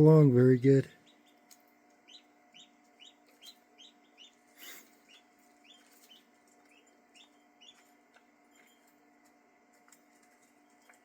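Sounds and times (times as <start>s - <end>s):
ducklings peeping: 0.6s - 8.9s.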